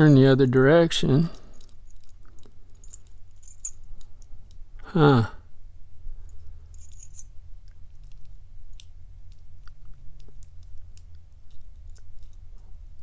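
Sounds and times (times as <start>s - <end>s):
low steady hum: 0.0s - 13.0s
padlock and tools clicking: 1.5s - 4.6s.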